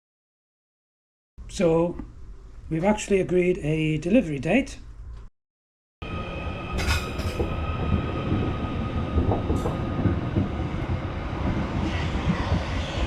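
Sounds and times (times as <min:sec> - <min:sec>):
electric train rumble: 0:06.0 - 0:13.0.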